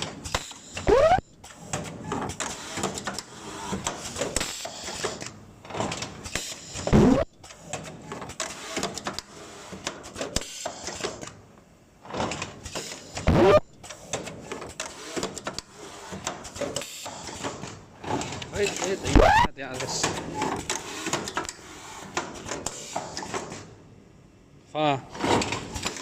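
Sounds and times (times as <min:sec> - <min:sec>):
welding machine clatter and clicks: 0:00.0 - 0:11.4, 0:12.1 - 0:23.6, 0:25.4 - 0:26.0.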